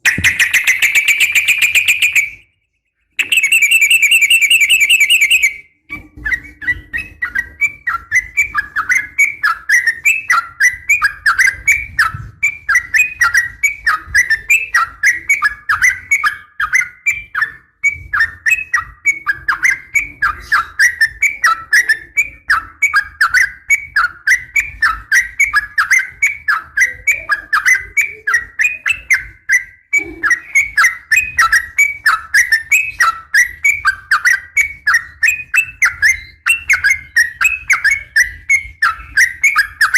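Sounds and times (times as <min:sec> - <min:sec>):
bird chirping rapidly: 0:00.0 - 0:02.4, 0:03.2 - 0:05.6.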